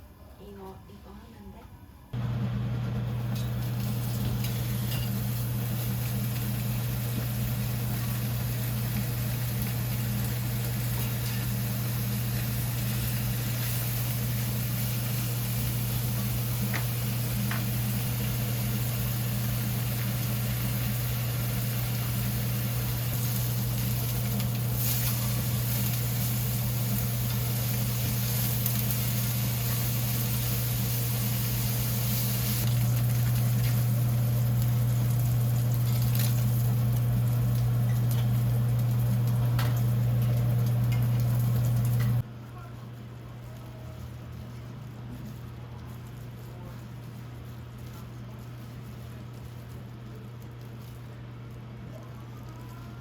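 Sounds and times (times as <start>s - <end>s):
electric motor hum: 2.2s - 42.2s.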